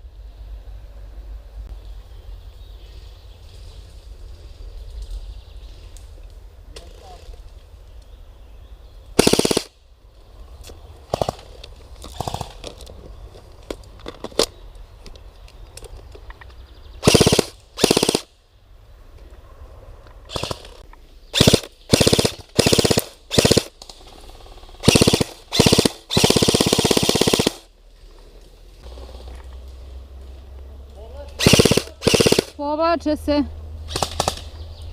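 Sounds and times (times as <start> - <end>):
airsoft gun full-auto bursts: 9.2 - 9.7, 17.0 - 18.3, 20.3 - 20.7, 21.4 - 23.7, 24.8 - 27.7, 31.4 - 32.6, 33.9 - 34.4.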